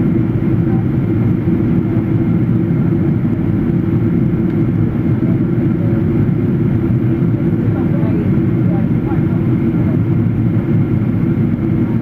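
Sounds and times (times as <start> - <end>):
airliner engine roar: 0.0 - 12.0.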